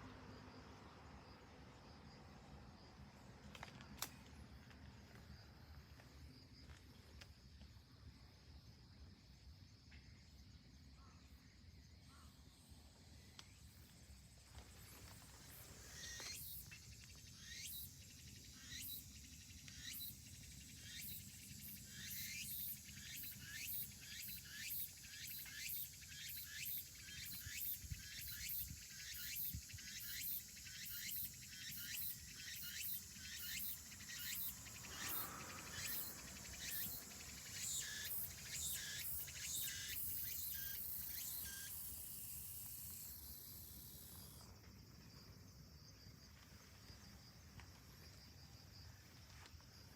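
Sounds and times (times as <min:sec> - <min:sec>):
insect high-pitched pulses: 0:11.4 - 0:44.6.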